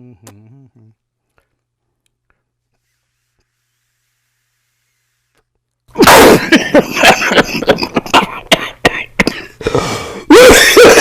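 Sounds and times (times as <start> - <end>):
person coughing: 6.0 - 11.0
raspy breath: 9.5 - 10.4.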